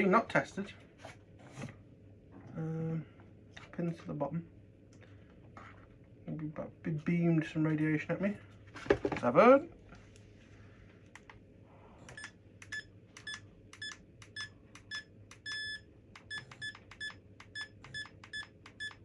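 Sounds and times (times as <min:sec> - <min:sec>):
electronic buzzer beeping: 0:12.1 - 0:19.0.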